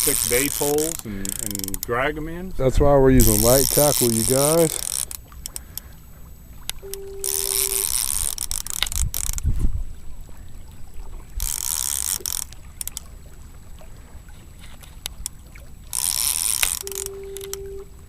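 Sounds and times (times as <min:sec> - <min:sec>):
fishing reel drag buzzing: 0:00.0 - 0:02.2, 0:03.1 - 0:09.6, 0:11.4 - 0:13.1, 0:14.6 - 0:17.8.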